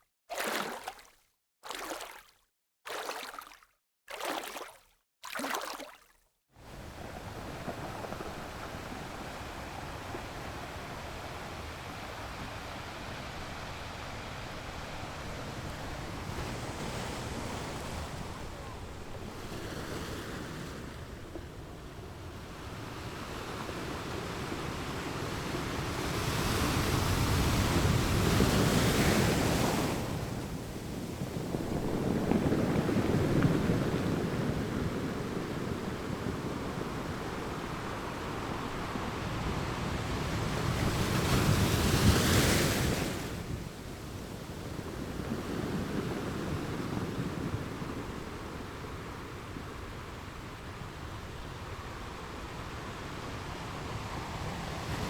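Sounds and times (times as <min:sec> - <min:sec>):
ocean waves on shore: 0:06.6 - 0:55.0.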